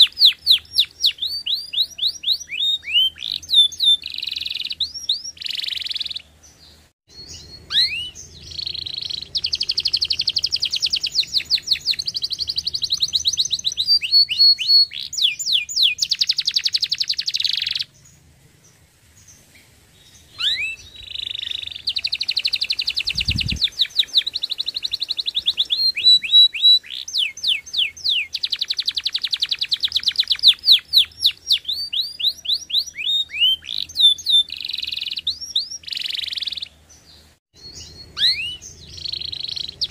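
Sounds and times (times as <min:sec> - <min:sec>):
canary singing: 0:00.0 - 0:18.2, 0:20.0 - 0:39.9.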